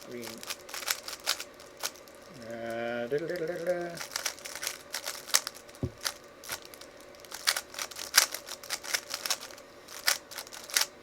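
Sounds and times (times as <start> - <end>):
puzzle cube plastic clicks: 7.3 - 10.9.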